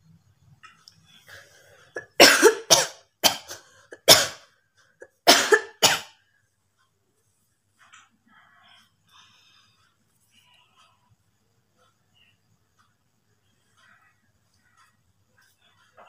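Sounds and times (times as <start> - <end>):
person coughing: 2.0 - 4.4, 5.0 - 6.2.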